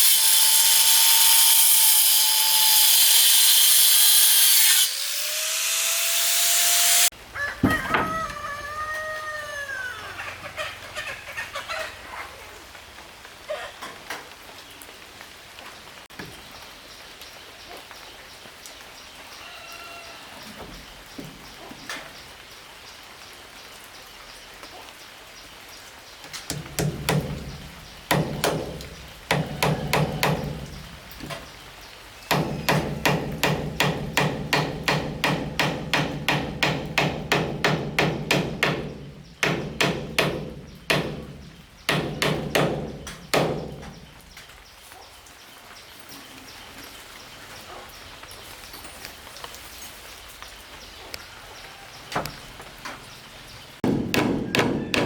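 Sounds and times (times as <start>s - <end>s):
hammer striking wood: 26.5s - 30.8s, 32.3s - 43.9s, 53.8s - 55.0s.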